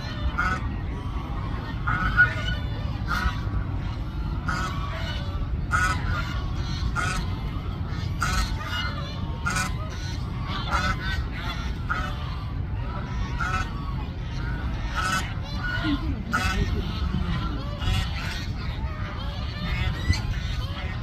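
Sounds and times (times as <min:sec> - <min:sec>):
steady low rumble: 0:00.0 - 0:21.0
waterfowl honking: 0:00.0 - 0:21.0.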